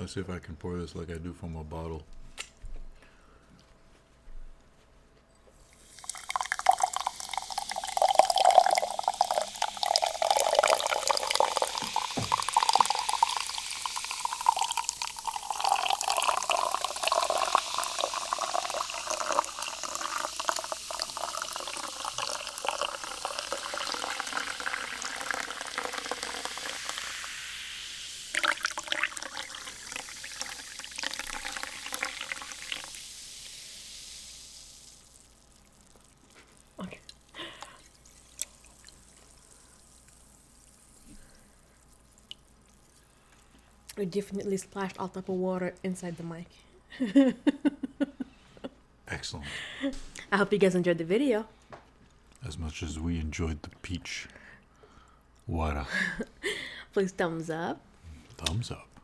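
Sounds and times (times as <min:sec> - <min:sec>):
sparkling water pouring and splashing: 0:05.5 - 0:45.1.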